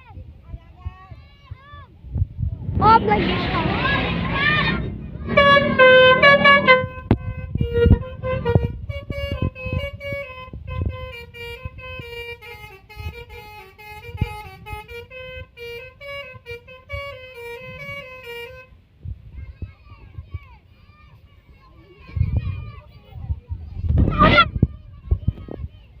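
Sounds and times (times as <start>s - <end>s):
musical air horn tune: 3.1s - 18.7s, 24.1s - 24.5s.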